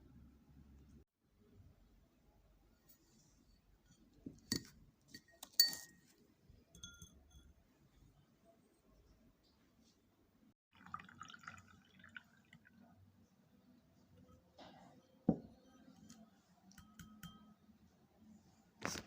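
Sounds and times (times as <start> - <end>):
glass clink: 4.4 - 6.1, 6.7 - 7.6, 15.3 - 17.7
liquid pouring: 10.7 - 12.9.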